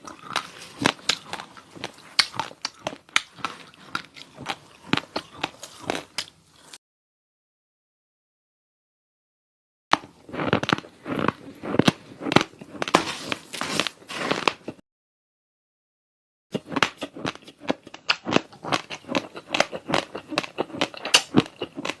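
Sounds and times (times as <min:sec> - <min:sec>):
crunching raw rice: 0:00.0 - 0:06.8, 0:10.0 - 0:14.8, 0:16.6 - 0:22.0.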